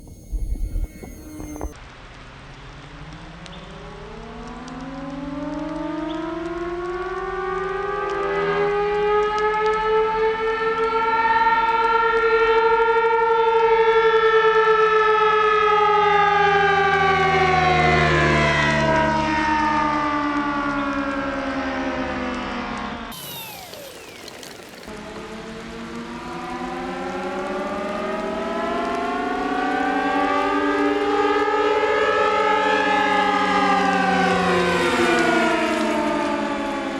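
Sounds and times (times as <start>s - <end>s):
dive siren wailing: 0.0s - 1.8s, 23.1s - 36.9s.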